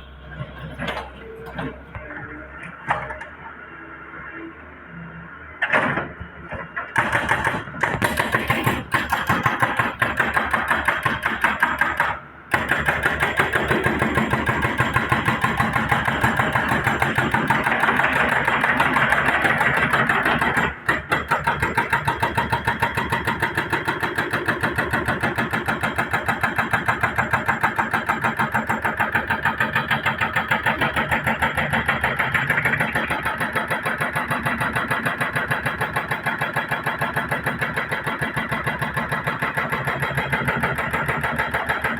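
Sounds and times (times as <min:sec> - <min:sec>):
excavator diesel engine running: 0:00.0 - 0:04.6, 0:24.6 - 0:41.9.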